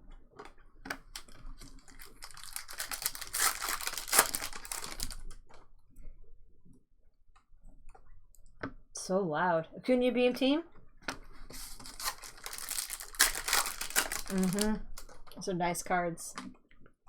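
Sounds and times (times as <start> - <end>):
foil wrapper tearing and crinkling: 1.2 - 5.4, 11.5 - 15.1.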